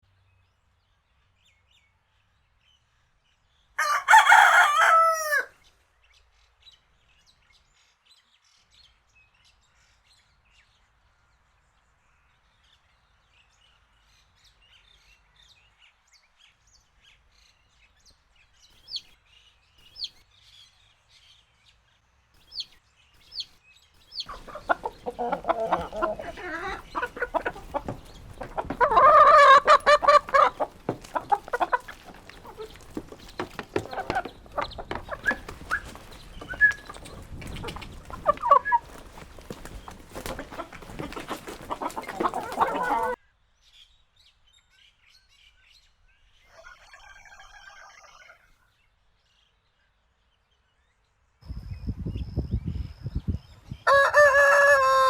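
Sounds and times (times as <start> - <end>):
rooster crowing: 3.8 - 5.5, 53.8 - 55.0
chickens clucking: 24.1 - 43.2, 53.1 - 55.0
faint bird chirps: 46.4 - 48.8.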